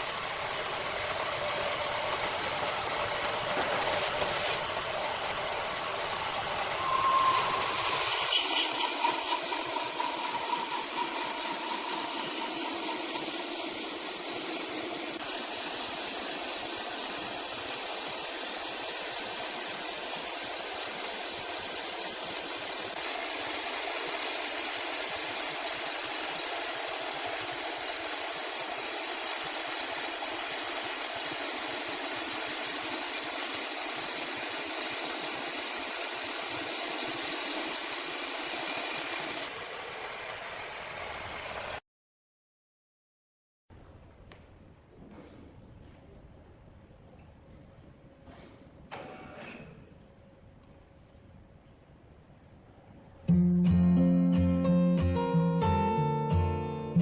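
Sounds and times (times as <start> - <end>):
sawmill machinery rattling: 0.0 - 40.5.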